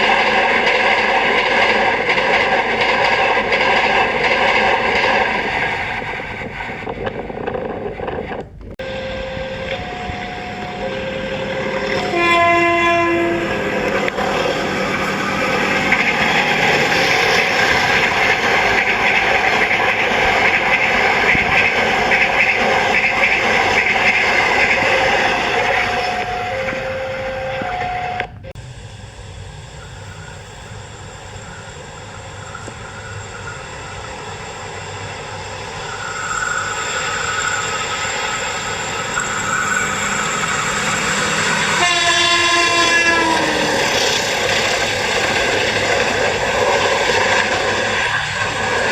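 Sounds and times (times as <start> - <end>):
train passing rumble and clatter: 0.0 - 48.9
locomotive horn blast: 8.8 - 16.5, 24.6 - 28.6, 41.4 - 43.9.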